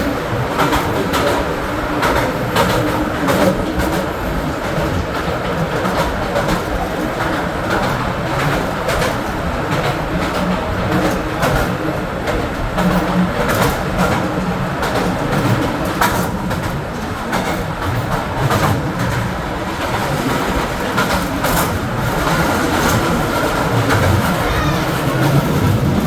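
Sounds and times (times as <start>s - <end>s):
clacks and knocks of train: 0.0s - 26.0s
train rumbling on rails: 0.0s - 26.0s.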